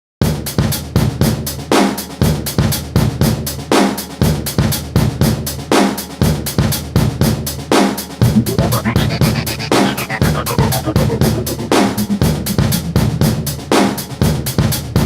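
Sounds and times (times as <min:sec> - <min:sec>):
electronic dance drum beat: 0:08.2 - 0:14.4.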